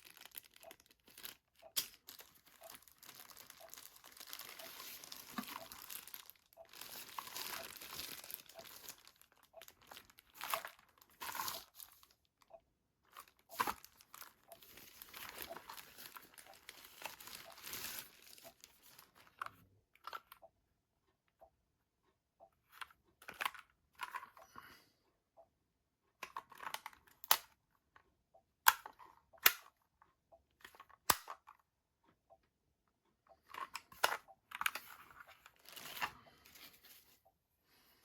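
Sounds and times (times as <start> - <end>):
packaging crinkling and rustling: 0.0 - 20.3, 33.5 - 37.2.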